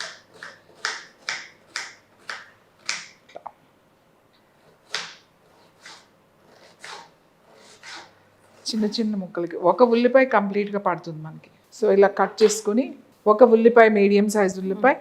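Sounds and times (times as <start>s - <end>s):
knife chopping onion: 0.0s - 3.2s, 4.6s - 9.0s.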